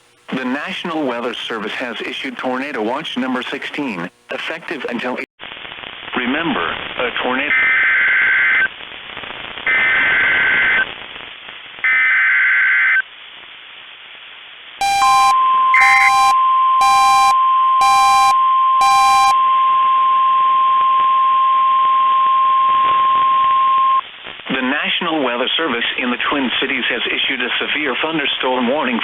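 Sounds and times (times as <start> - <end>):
raspy digital header bursts: 14.8 - 19.4
electronic beeper: 14.8 - 24.0
steady warning alarm tone: 14.8 - 24.0.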